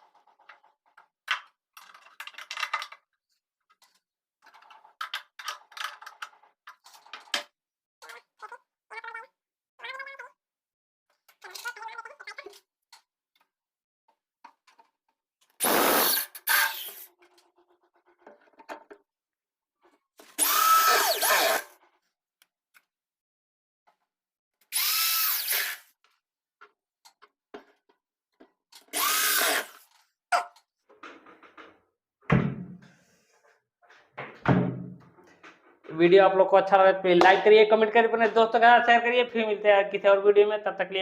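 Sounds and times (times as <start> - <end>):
power drill driving screws: 15.6 - 17.1, 20.3 - 21.7, 24.7 - 25.9, 28.9 - 29.8.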